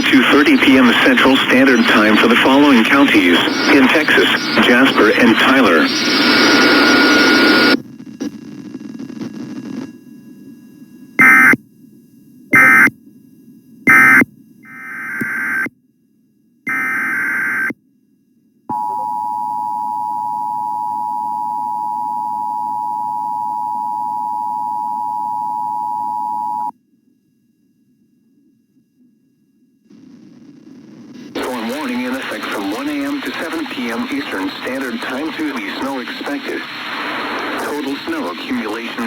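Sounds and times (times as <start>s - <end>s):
warbling digital data bursts: 0.1s - 7.8s, 16.7s - 17.7s.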